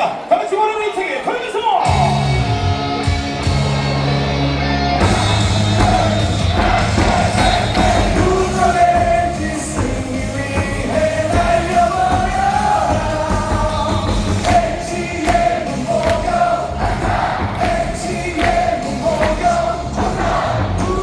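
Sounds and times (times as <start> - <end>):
amplified music from speakers: 1.8 - 21.0
stadium crowd singing in unison: 5.0 - 21.0.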